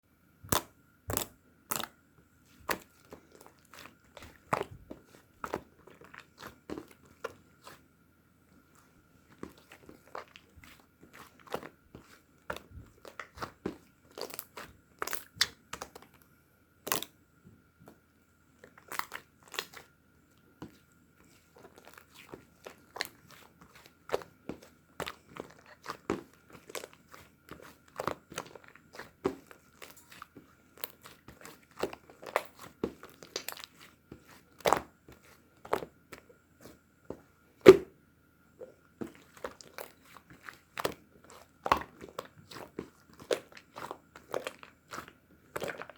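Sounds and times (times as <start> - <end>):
slime popping and crackling: 12.5 - 16.1, 39.2 - 45.9.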